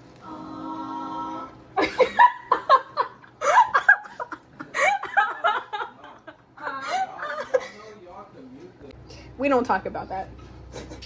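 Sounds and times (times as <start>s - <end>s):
people laughing: 1.8s - 8.0s.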